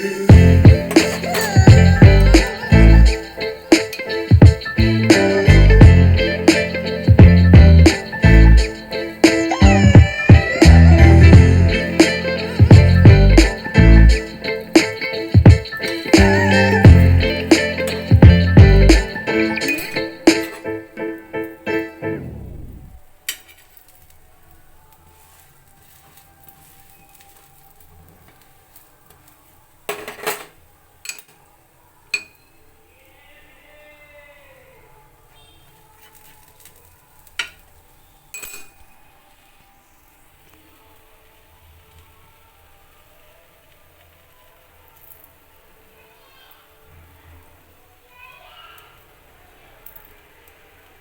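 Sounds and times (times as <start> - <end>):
dishes and utensils clattering: 0.8 - 1.7, 29.9 - 31.4.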